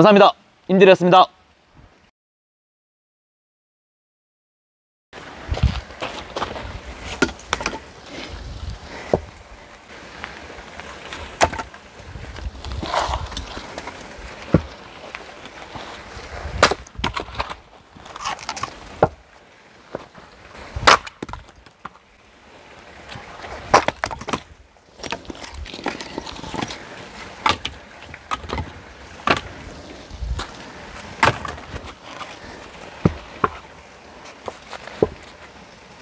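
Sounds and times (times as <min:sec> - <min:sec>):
wood splintering and knocking: 0:05.6 - 0:07.8, 0:11.2 - 0:11.7, 0:12.7 - 0:14.8, 0:16.5 - 0:19.2, 0:20.8 - 0:22.0, 0:23.1 - 0:26.8, 0:27.4 - 0:29.6, 0:30.3 - 0:33.6, 0:34.4 - 0:35.3
axe splitting firewood: 0:05.6 - 0:08.4, 0:11.0 - 0:11.9, 0:12.6 - 0:15.2, 0:16.4 - 0:19.2, 0:19.9 - 0:22.0, 0:23.0 - 0:35.4.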